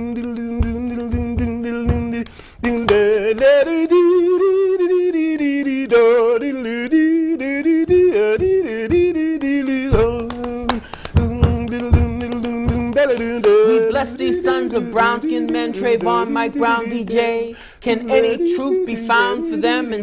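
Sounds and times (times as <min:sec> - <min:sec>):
low rhythmic thumps: 0:00.0 - 0:04.0, 0:06.6 - 0:17.2
wordless singing with vibrato: 0:00.0 - 0:20.0.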